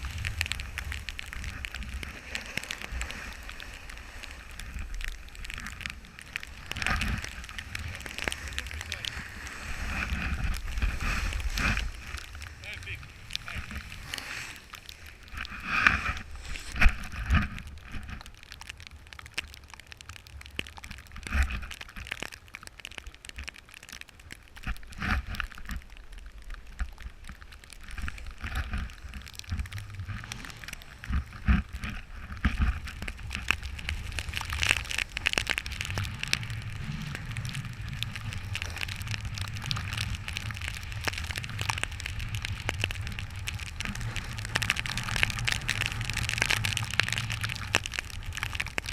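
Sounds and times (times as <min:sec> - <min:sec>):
snowboard scraping over snow: 0:00.0 - 0:18.0, 0:27.8 - 0:48.9
low rumble: 0:00.0 - 0:18.4, 0:28.2 - 0:48.9.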